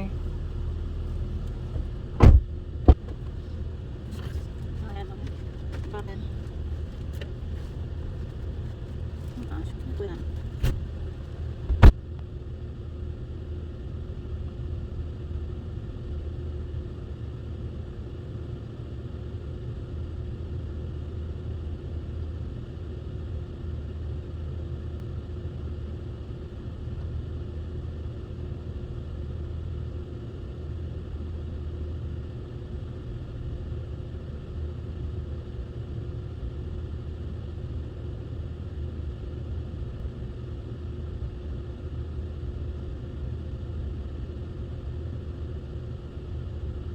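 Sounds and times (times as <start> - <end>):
car engine running: 0.0 - 16.3.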